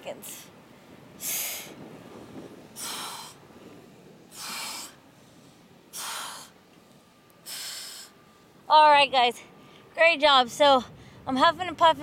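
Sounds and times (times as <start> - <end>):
woman exhaling forcefully: 2.8 - 3.4, 4.3 - 5.0.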